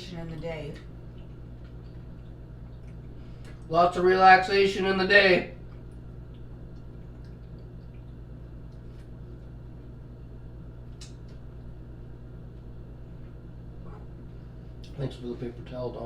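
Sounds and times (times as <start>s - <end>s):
low electrical hum: 0.0s - 16.0s
person chewing a sandwich: 0.9s - 3.7s, 5.6s - 15.0s.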